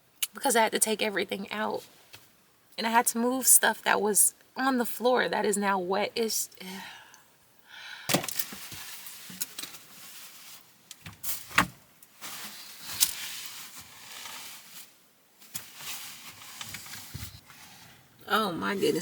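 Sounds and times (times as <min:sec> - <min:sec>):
rustling of household items: 0:08.2 - 0:18.2.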